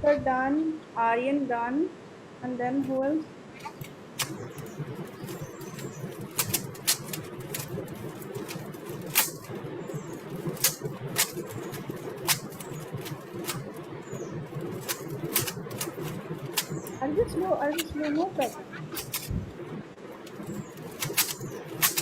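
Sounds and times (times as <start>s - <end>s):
puzzle cube layers clicking: 3.6s - 19.4s, 20.2s - 22.0s.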